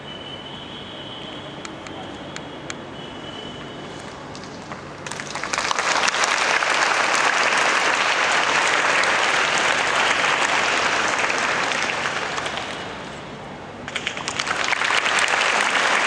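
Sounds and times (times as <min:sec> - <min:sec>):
audience applauding: 0:05.0 - 0:13.1, 0:13.9 - 0:16.0.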